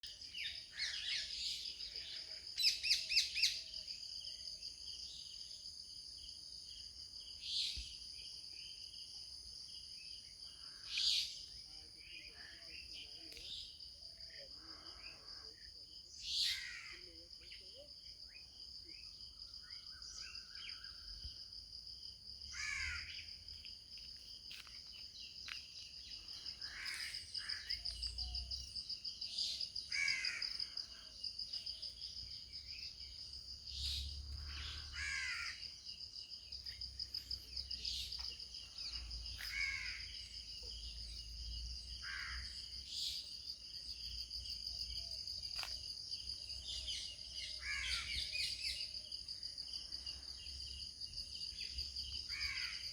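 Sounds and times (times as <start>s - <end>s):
high pulsing insect trill: 0.1s - 52.9s
birds calling: 32.7s - 35.9s.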